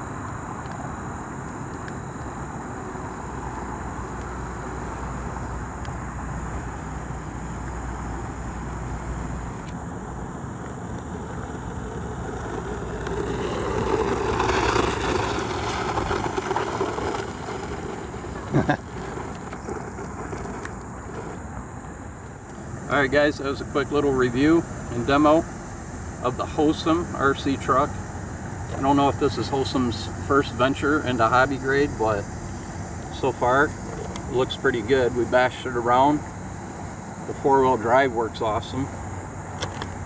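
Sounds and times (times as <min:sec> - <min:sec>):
toy truck motor and tyres: 0:09.7 - 0:22.6.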